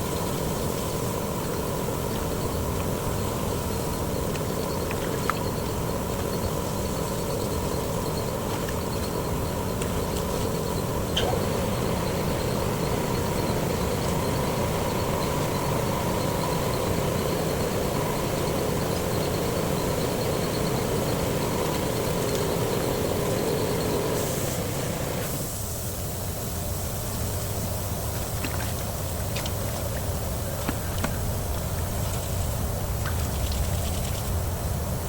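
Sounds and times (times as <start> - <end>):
workshop machine humming: 0.0 - 25.5
high hiss: 0.0 - 35.0.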